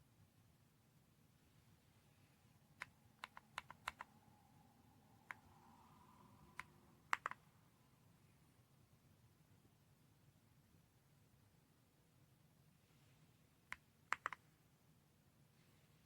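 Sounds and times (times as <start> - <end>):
mechanical keyboard typing: 2.8 - 4.1, 6.6 - 7.4, 13.7 - 14.4.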